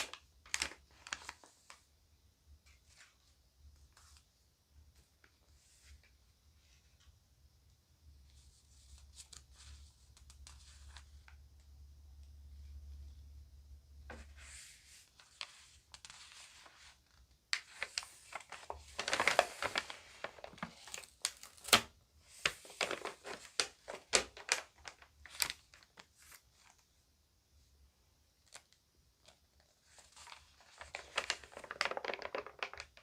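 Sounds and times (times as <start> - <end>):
stiff paper crinkling and snapping: 0.0 - 1.8, 17.5 - 26.8, 28.4 - 33.0
magazine pages rustling: 0.0 - 1.9, 8.3 - 11.4, 14.1 - 26.9, 28.4 - 33.0.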